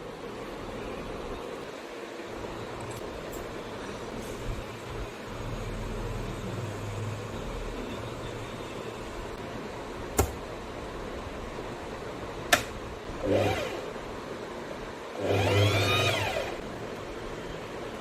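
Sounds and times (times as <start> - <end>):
steady hum: 0.0 - 18.0
sewing machine motor whirring: 13.2 - 14.0, 15.2 - 16.7.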